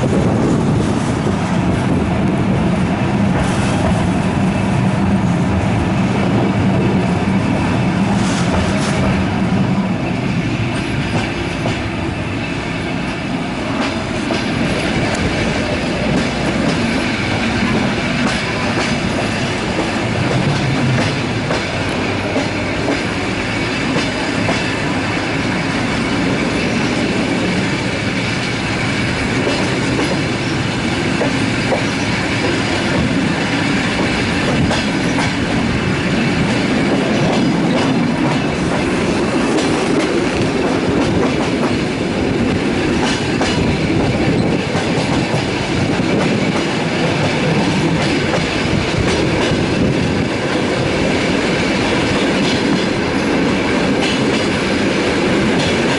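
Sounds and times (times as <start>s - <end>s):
clickety-clack over rail joints: 0.0s - 55.9s
train wheels rumbling on rails: 0.0s - 55.9s.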